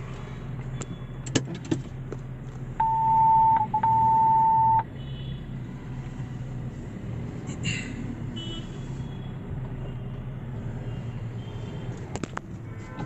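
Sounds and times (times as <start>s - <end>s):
car engine humming: 0.0s - 4.9s
high electronic beep: 2.8s - 4.8s.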